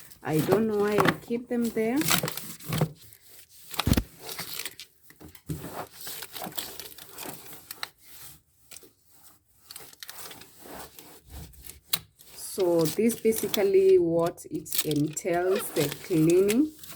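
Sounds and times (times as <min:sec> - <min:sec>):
cloth wiping and rubbing: 0:10.4 - 0:11.5.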